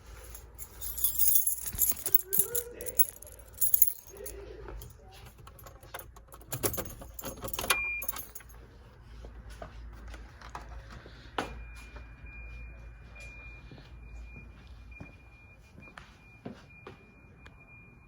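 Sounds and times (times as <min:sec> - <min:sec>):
keys jangling: 0:00.0 - 0:08.5
handling clicks and knocks: 0:00.2 - 0:08.5.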